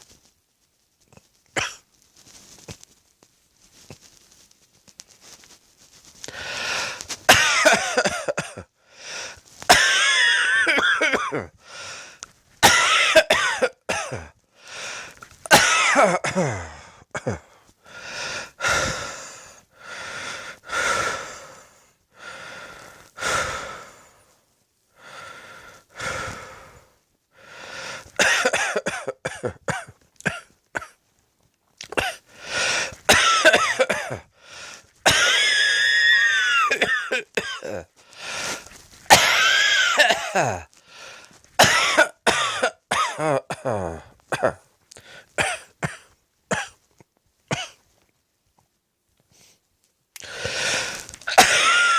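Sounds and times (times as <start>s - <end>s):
wheezing breaths: 6.0s - 7.3s, 8.8s - 9.6s, 11.6s - 12.4s, 14.5s - 15.4s, 16.6s - 28.2s, 32.2s - 33.1s, 34.3s - 36.3s, 37.6s - 41.5s, 50.2s - 51.9s
person coughing: 7.3s - 8.7s, 9.7s - 11.5s, 12.6s - 14.4s, 15.5s - 17.6s, 28.2s - 31.0s, 31.8s - 32.2s, 33.1s - 34.3s, 35.1s - 35.7s, 36.4s - 37.9s, 39.1s - 40.7s, 41.6s - 44.6s, 45.4s - 46.8s, 47.5s - 47.8s, 51.3s - 51.9s.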